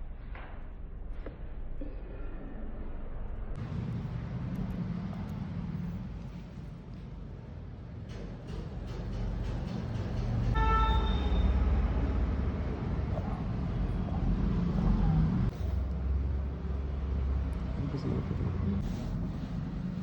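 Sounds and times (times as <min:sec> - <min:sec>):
road traffic rumble: 0:03.6 - 0:20.0
vehicle horn: 0:10.5 - 0:11.8.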